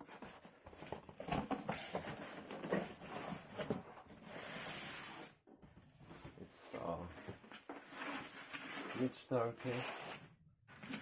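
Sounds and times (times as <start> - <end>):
packaging rustling and tapping: 0.4 - 2.9.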